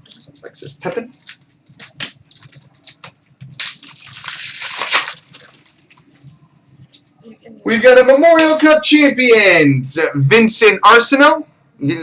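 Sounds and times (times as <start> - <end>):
plastic wrapping crinkling: 0.0 - 7.1.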